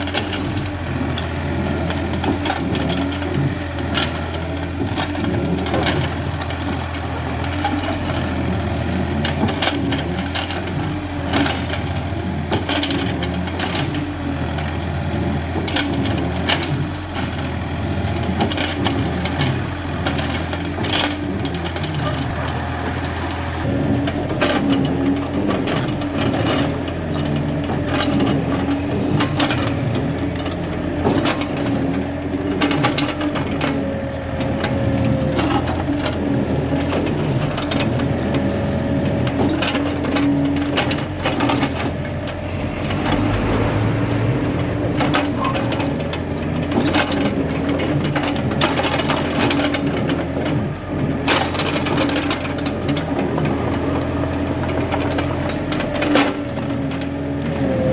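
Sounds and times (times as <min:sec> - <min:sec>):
excavator diesel engine running: 0:00.0 - 0:57.9
metal clanks and scrapes: 0:23.7 - 0:57.9.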